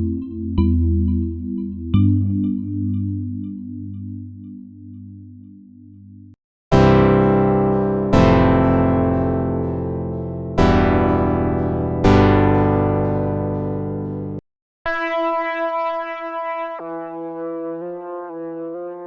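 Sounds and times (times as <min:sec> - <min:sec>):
electric piano chords: 0:06.7 - 0:14.4.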